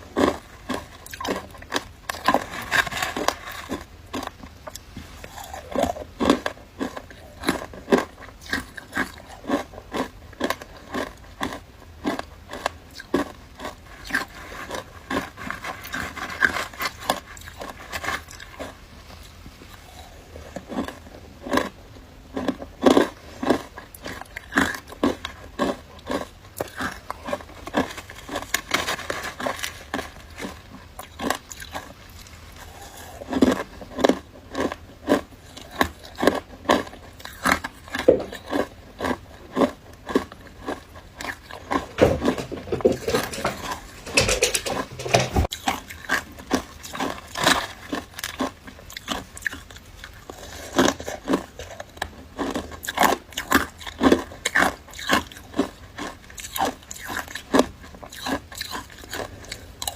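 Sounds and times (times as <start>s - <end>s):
crunching and chewing shaved ice: 0.0s - 59.9s.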